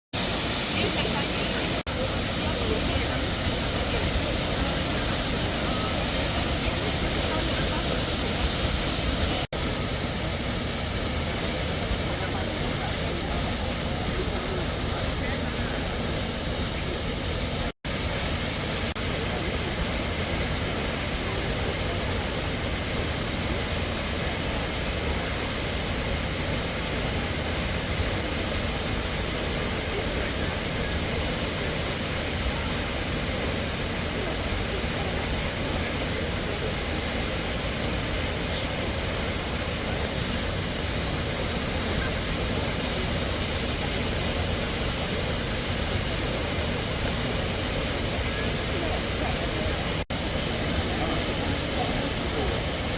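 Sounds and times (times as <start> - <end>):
waterfall rushing: 0.2 - 52.9.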